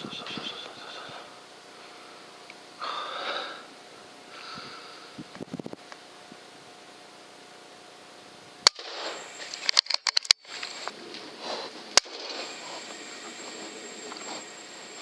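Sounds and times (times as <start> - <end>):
air rifle shot: 8.6 - 9.3, 12.0 - 12.5
metallic clicks: 9.5 - 10.5.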